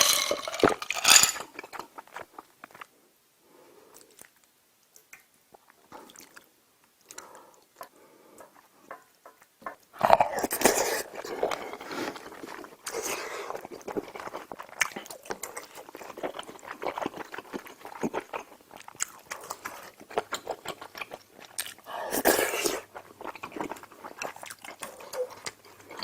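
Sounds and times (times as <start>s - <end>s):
person chewing: 10.0s - 26.0s.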